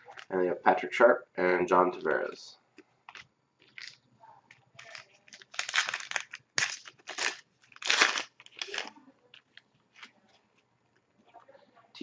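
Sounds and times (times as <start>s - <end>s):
wrapper tearing and crinkling: 3.7s - 4.0s, 4.8s - 10.2s.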